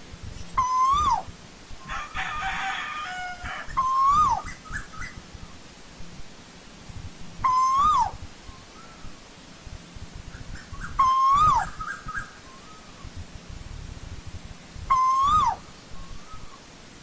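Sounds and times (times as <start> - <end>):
bird calling: 0.4 - 5.2, 7.4 - 9.2, 10.3 - 13.2, 14.9 - 16.7.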